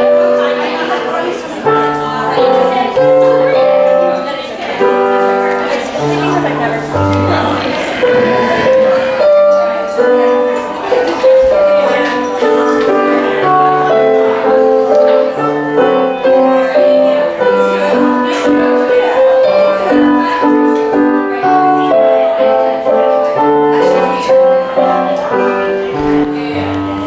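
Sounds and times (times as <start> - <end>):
keyboard melody over chords: 6.7 - 9.6.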